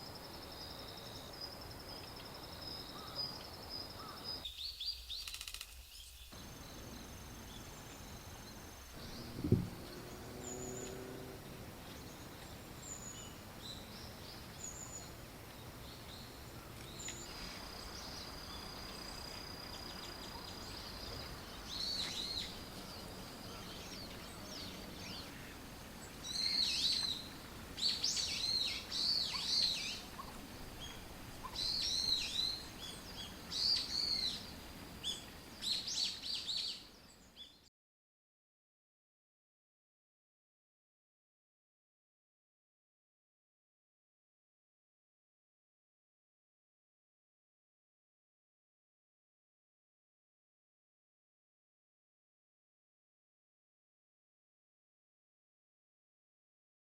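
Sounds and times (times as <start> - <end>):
songbirds chirping: 0.0 - 37.7.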